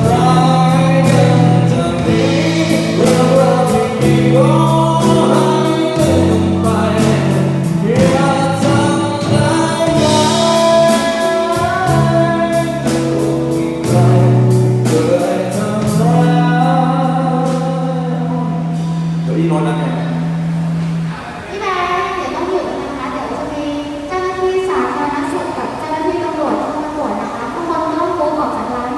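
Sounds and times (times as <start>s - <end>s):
drums and cymbals: 0.0s - 19.3s
person singing: 0.0s - 19.9s
bass notes: 0.0s - 21.6s.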